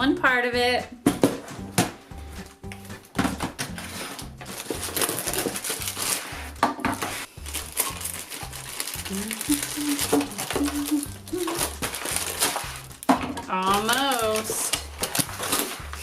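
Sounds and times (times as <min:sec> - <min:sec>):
background music with steady beat: 0:00.0 - 0:16.0
packaging crinkling and rustling: 0:03.2 - 0:13.1, 0:13.8 - 0:16.0.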